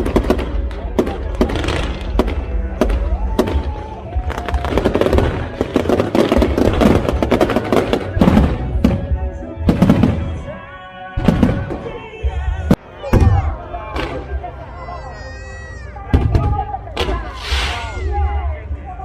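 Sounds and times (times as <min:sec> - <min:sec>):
fireworks bangs: 0:00.0 - 0:10.4, 0:11.2 - 0:12.4.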